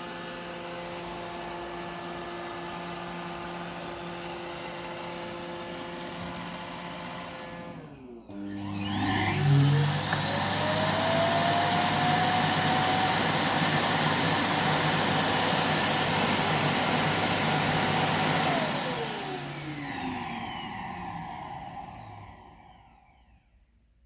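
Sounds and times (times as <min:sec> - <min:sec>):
suction motor whining: 0:07.6 - 0:23.2.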